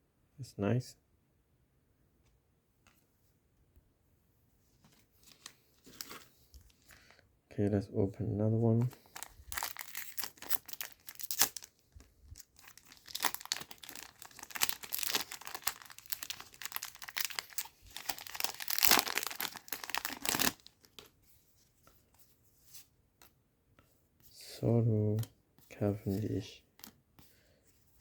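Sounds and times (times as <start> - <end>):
foil wrapper tearing and crinkling: 9.0 - 11.8, 12.4 - 21.1.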